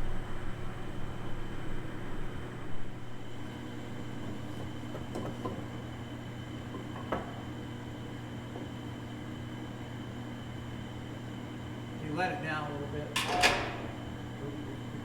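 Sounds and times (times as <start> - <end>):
electric pump humming: 0.0 - 15.0.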